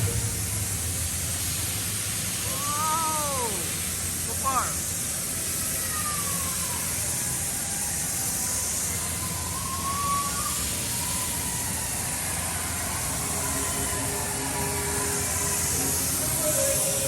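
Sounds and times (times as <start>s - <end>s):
loud rushing noise: 0.0s - 4.2s, 11.5s - 17.0s.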